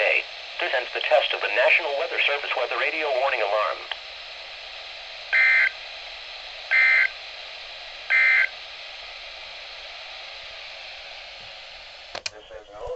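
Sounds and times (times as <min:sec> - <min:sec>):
steady radio hiss: 0:00.0 - 0:12.9
warbling two-tone data bursts: 0:05.3 - 0:05.8, 0:06.7 - 0:07.1, 0:08.1 - 0:08.5.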